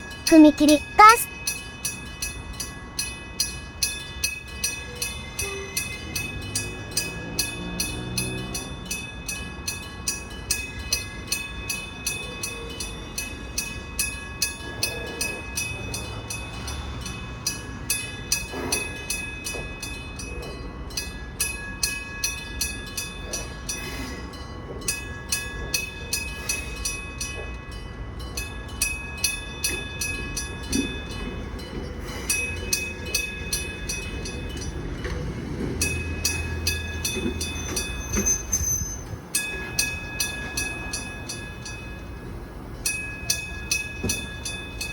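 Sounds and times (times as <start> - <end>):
railroad crossing bell ringing: 0.0 - 44.9
electric train rumbling: 1.6 - 44.9
wheel squeal: 35.0 - 40.8.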